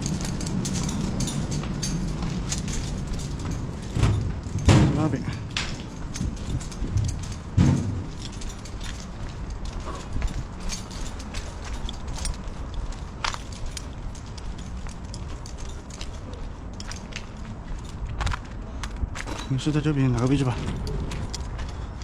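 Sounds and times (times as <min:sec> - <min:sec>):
footsteps: 0:00.0 - 0:22.0
low rumble: 0:00.0 - 0:22.0
loud thump: 0:04.0 - 0:05.1, 0:07.6 - 0:08.1.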